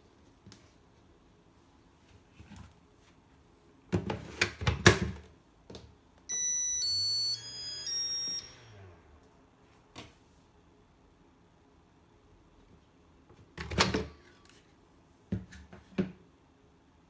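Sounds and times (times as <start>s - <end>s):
battery charger electronic jingle: 6.3s - 9.2s.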